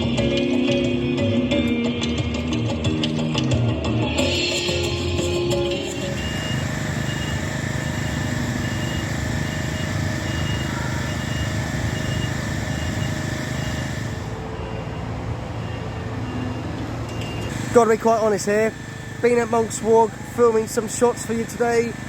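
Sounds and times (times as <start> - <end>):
vehicle engine running: 2.6 - 14.5, 17.4 - 22.0
reversing alarm beeping: 4.1 - 22.0.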